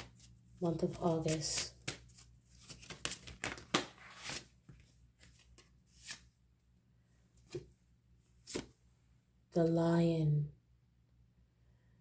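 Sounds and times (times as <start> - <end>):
cards being shuffled: 0.0 - 6.3, 8.4 - 8.7
card snaps: 1.3 - 4.4.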